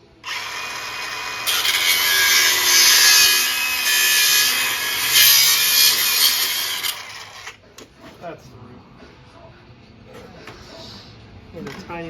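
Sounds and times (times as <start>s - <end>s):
angle grinder cutting metal: 0.0s - 7.6s.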